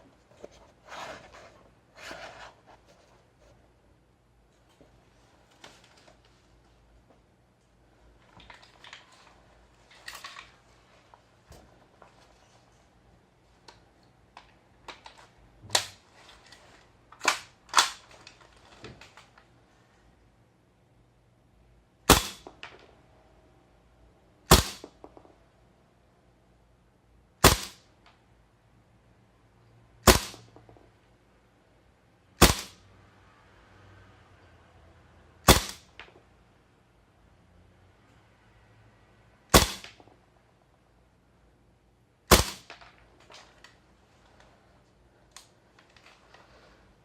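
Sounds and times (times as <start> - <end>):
airsoft rifle shots: 22.1 - 22.7, 24.5 - 25.0, 27.4 - 27.9, 30.0 - 30.6, 32.4 - 32.8, 35.4 - 35.9, 39.5 - 40.1, 42.3 - 42.8.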